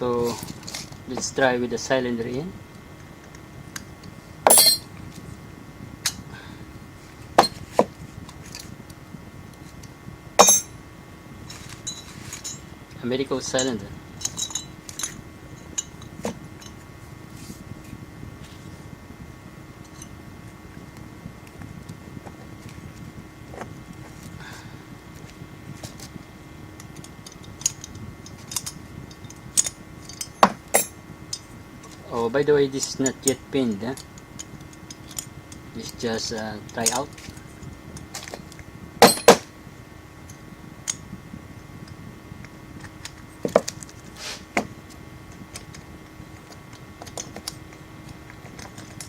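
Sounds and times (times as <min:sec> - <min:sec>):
metal lock parts clicking: 0:04.5 - 0:04.8, 0:10.4 - 0:10.7.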